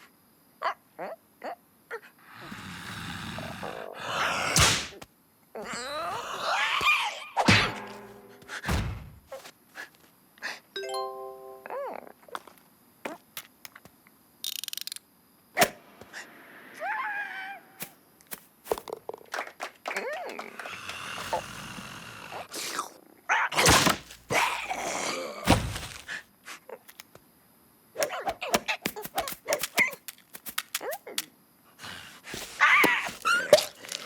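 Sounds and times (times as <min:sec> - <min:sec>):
cartoon knocks and thuds: 0:07.4 - 0:09.2
background music: 0:10.8 - 0:11.8.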